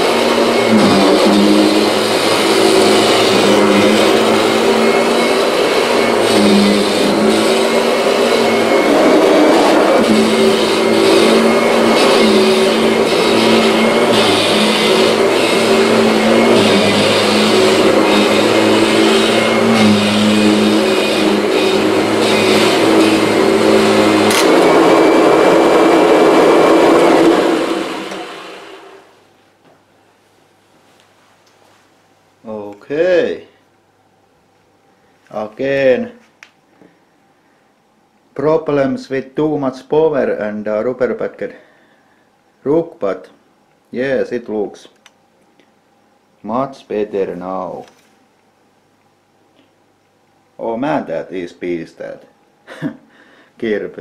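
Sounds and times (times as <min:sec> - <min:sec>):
vacuum cleaner running: 0:00.0 - 0:29.4
vacuum cleaner click: 0:24.1 - 0:28.7.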